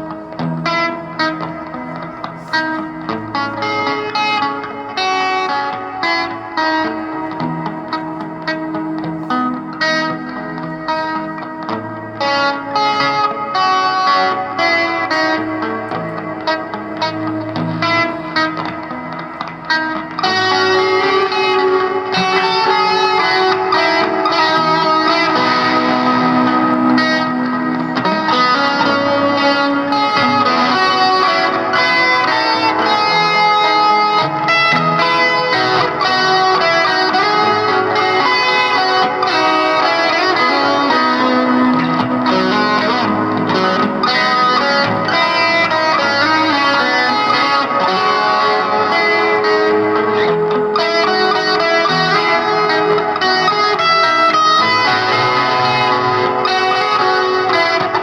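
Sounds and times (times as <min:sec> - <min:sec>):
electric guitar with effects: 0:00.0 - 0:58.0.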